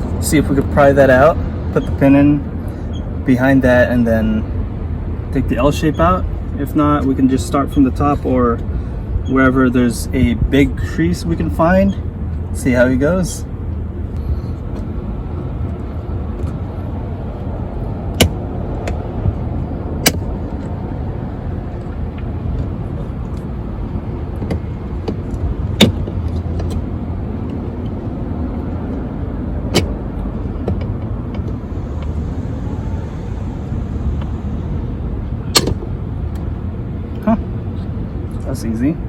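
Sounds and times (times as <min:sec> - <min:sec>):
steady low rumble: 0:00.0 - 0:39.0.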